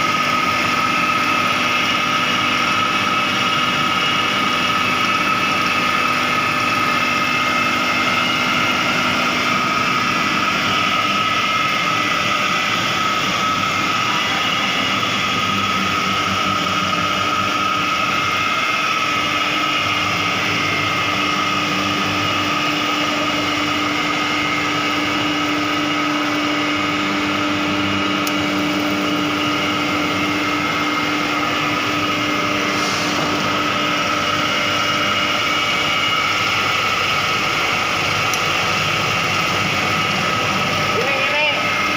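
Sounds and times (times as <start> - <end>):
burner and blower noise: 0.0 - 41.9.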